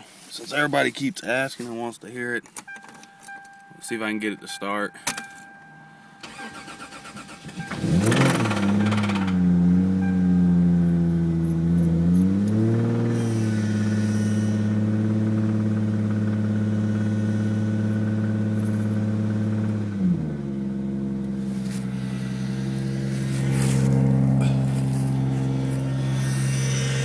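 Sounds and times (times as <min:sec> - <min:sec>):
car engine idling: 0:02.0 - 0:27.0.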